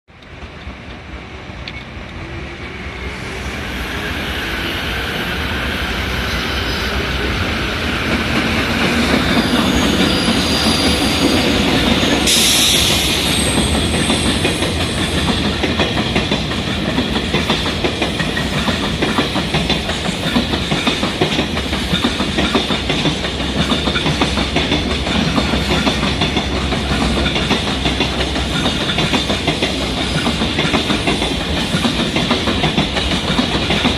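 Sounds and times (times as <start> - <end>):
electric locomotive passing: 0.1 - 33.9
freight wagons clacking over rail joints: 13.7 - 33.9.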